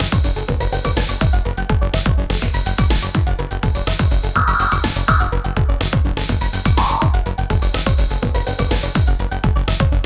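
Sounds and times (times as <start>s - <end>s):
electronic dance music: 4.4s - 5.7s, 6.7s - 7.3s
punchy kick drum: 4.4s - 6.0s, 6.7s - 7.7s.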